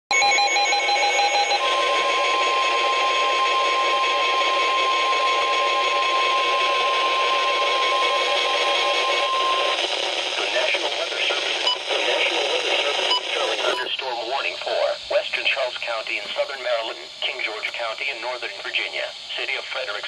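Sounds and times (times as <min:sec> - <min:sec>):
steady high alarm beep: 0:00.1 - 0:13.9
receiver hiss: 0:01.4 - 0:20.0.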